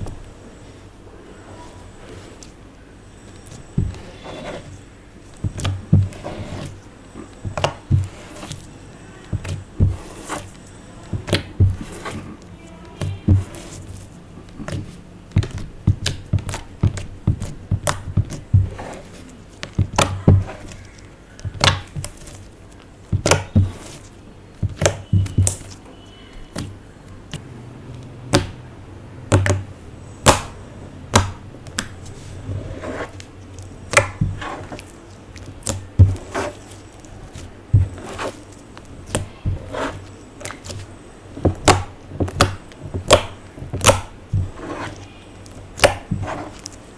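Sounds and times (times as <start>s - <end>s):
clicks and taps on hard surface: 24.6s - 28.6s.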